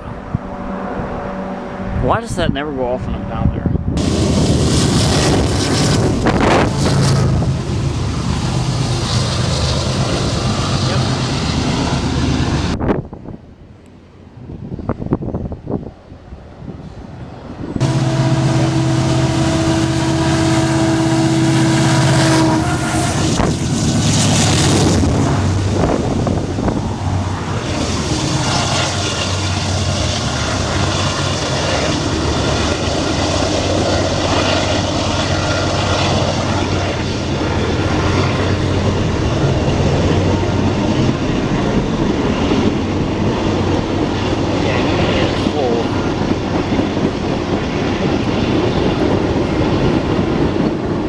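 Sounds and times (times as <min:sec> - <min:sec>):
rushing noise of passing train: 0:00.0 - 0:02.2, 0:03.5 - 0:51.0
diesel engines droning: 0:00.0 - 0:12.8, 0:17.0 - 0:51.0
train air horn: 0:04.0 - 0:11.1, 0:17.8 - 0:31.1, 0:36.0 - 0:39.2.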